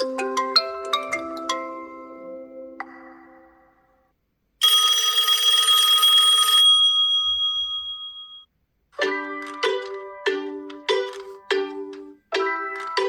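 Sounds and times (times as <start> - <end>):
telephone bell ringtone: 4.6 - 8.5.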